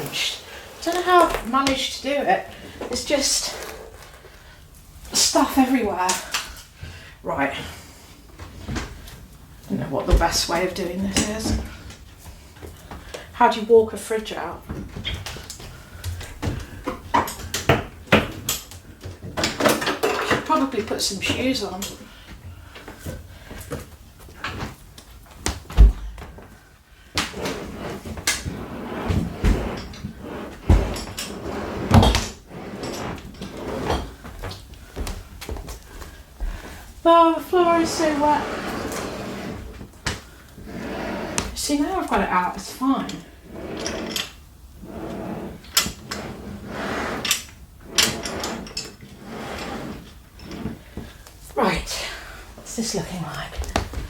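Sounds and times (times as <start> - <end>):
fridge scraping and rattling: 27.2 - 34.2.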